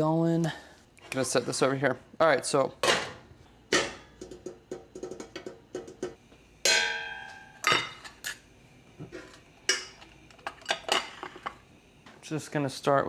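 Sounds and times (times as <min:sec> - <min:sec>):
cookware knocks and clatters: 0:02.8 - 0:08.4, 0:09.0 - 0:11.6
ringing metal clank: 0:06.7 - 0:08.4.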